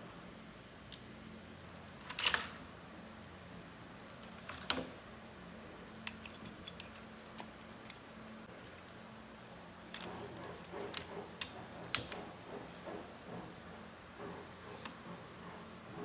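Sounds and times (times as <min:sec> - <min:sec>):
plastic parts clicking: 0:05.9 - 0:13.0.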